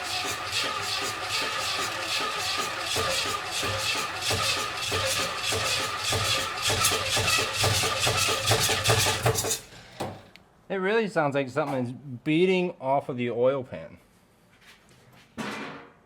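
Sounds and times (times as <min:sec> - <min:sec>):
engine running with rhythmic knocking: 0:00.0 - 0:10.2.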